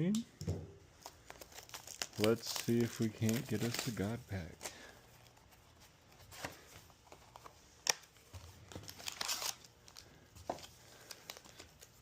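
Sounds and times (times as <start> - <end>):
wrapper crinkling: 1.0 - 5.5, 6.9 - 12.0.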